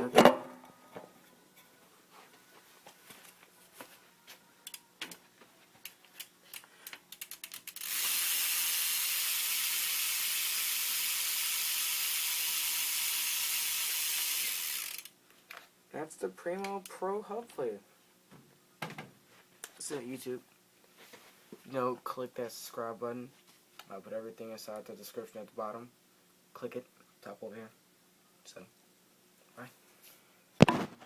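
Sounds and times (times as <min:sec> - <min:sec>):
bicycle hub ratchet clicking: 0:06.2 - 0:15.2
hub pawls buzzing: 0:07.1 - 0:15.1.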